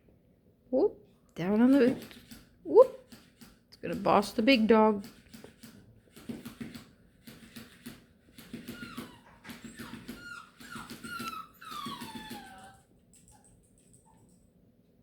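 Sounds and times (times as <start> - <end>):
puppy whining: 8.4 - 14.4.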